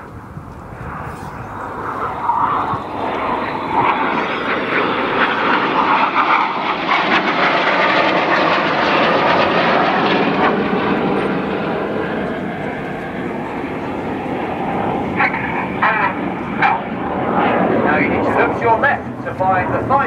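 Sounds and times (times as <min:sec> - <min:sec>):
jets flying past: 0:00.0 - 0:20.0.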